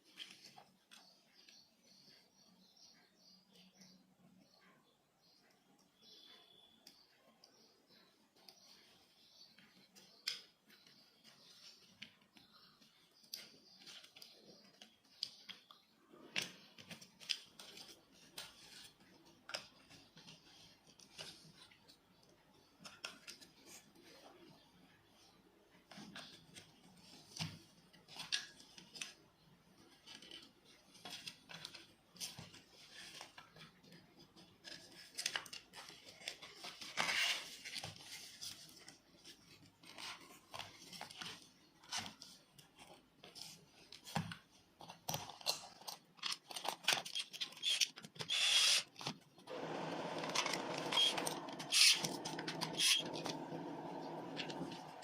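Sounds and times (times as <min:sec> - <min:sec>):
small parts clicking and scraping: 0:44.8 - 0:49.2, 0:50.4 - 0:53.3.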